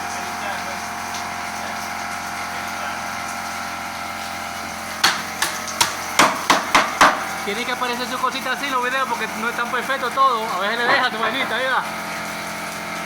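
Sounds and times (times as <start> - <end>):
hammer blows: 5.0 - 7.3
machine hum: 9.0 - 13.0.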